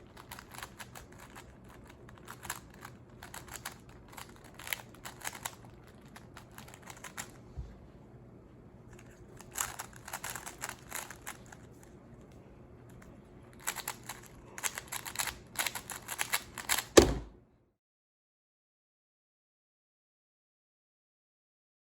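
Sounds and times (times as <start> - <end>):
plastic puzzle cube clicking: 9.5 - 11.4, 13.6 - 17.0
loud thump: 17.0 - 17.4.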